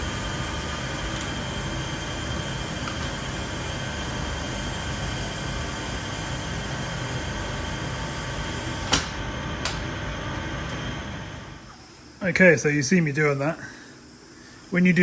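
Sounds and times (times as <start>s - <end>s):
paint spray hissing: 2.3s - 4.6s
sharp knocks: 8.8s - 9.9s.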